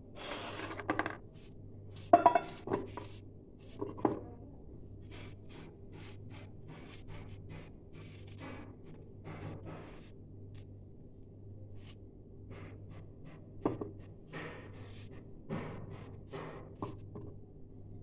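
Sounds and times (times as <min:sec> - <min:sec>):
dishes and utensils clinking: 0:02.1 - 0:02.9.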